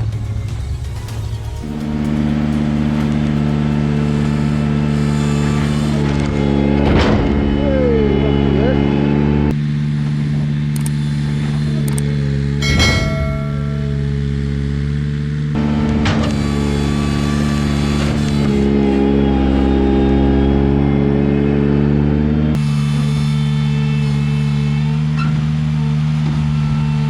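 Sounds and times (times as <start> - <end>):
tractor engine running: 0.0 - 27.0
sharp metallic clank: 12.6 - 15.0.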